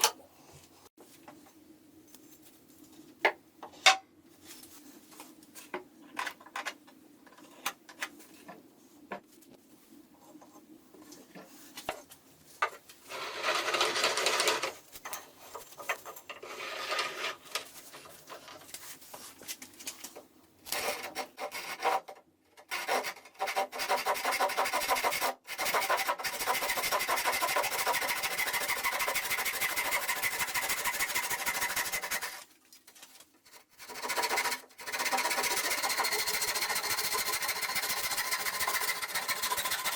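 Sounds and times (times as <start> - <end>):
rasping on wood: 22.7 - 32.4, 33.8 - 39.9.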